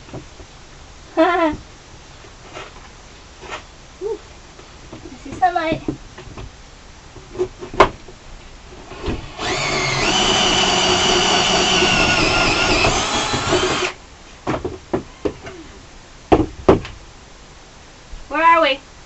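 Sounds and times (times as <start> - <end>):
power drill running: 9.2 - 14.0.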